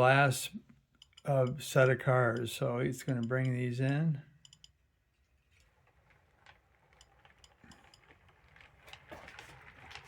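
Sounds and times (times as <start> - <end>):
model train clicking: 5.6 - 10.0.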